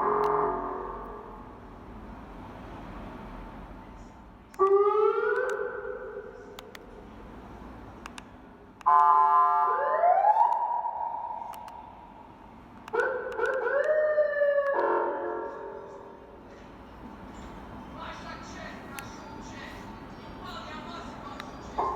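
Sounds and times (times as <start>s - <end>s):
electronic police siren: 4.6s - 6.2s, 8.9s - 11.4s, 12.9s - 15.5s.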